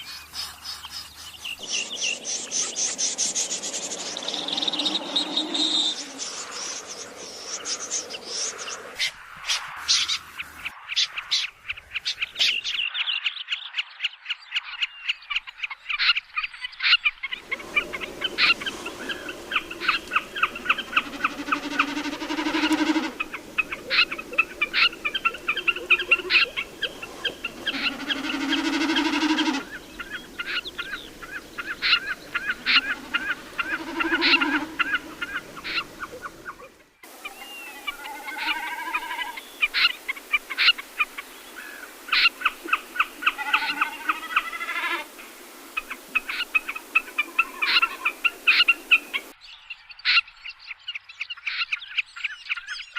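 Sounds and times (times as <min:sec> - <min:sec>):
low hooting calls: 0:17.4 - 0:49.3.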